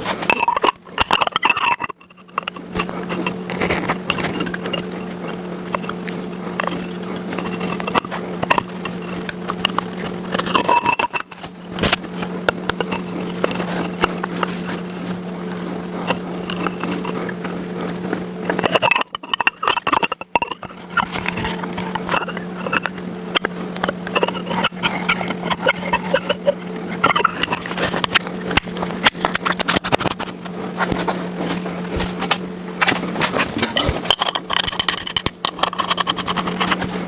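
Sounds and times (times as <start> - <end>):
hand tools clicking on metal: 0.0 - 37.0
steady hum: 0.0 - 37.0.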